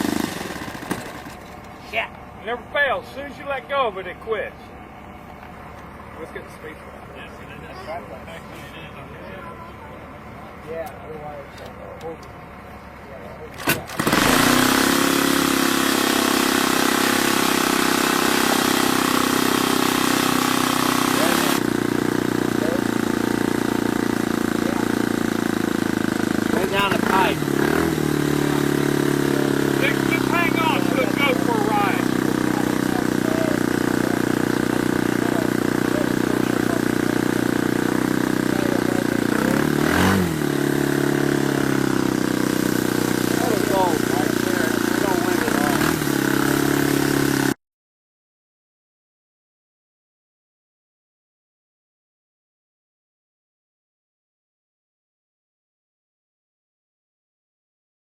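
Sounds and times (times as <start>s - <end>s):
model airplane engine buzzing: 0.0s - 1.8s, 13.6s - 47.6s.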